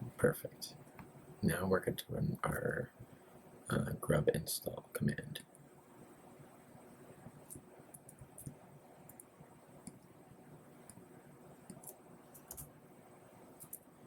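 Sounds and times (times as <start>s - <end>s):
computer keyboard typing: 7.5s - 10.1s, 11.7s - 12.7s, 13.6s - 13.9s.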